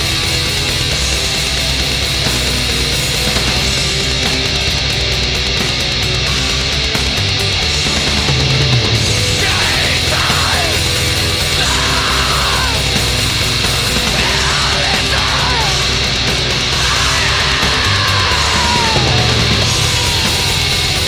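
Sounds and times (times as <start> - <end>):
distorted metal music: 0.0 - 21.0
harsh vocal cries: 9.0 - 21.0.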